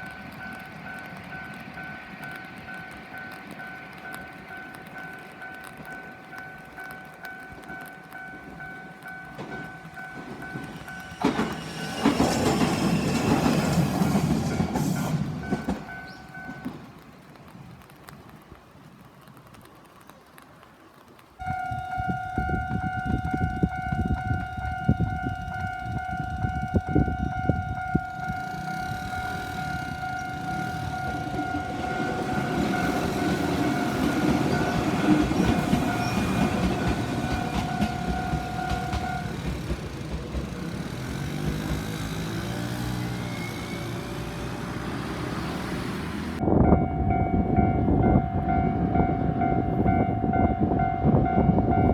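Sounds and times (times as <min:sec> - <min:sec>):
train wheels clacking: 0:00.0 - 0:17.5, 0:21.6 - 0:46.4
train passing loudly: 0:00.0 - 0:18.4, 0:21.4 - 0:51.9
level crossing alarm ringing: 0:21.4 - 0:39.6.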